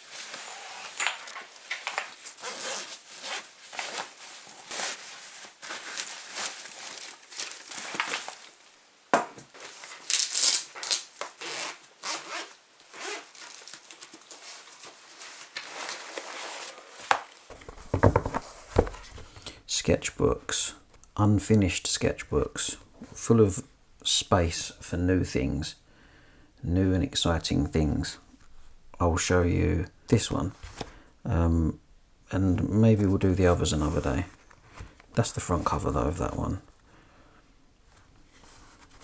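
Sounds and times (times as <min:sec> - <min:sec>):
paper rustling and scraping: 0:00.0 - 0:08.6, 0:09.5 - 0:19.5, 0:32.9 - 0:36.6, 0:38.0 - 0:39.0.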